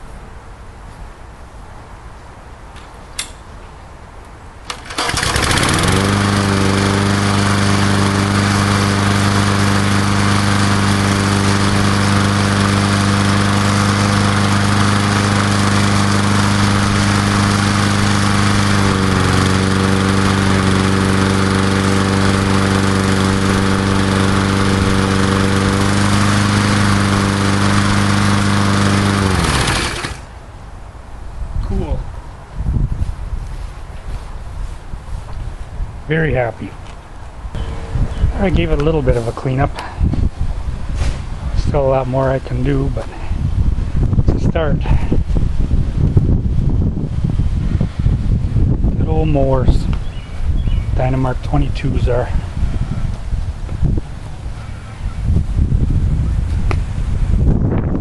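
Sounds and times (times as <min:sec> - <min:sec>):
lawn mower engine running: 0:04.6 - 0:30.4, 0:37.6 - 0:40.2, 0:53.2 - 0:57.4.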